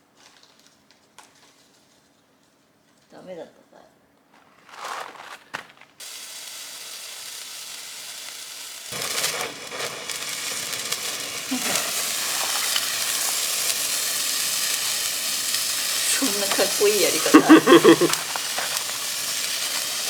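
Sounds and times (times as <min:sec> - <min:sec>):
oil crackles: 0:00.1 - 0:03.1, 0:04.2 - 0:20.0
food sizzling in hot oil: 0:06.0 - 0:20.0.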